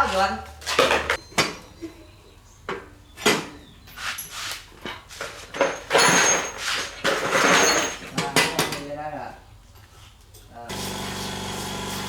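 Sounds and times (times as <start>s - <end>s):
tools and metal parts clattering: 0.0s - 1.7s, 3.2s - 9.0s
scraping and rattling: 3.9s - 8.8s.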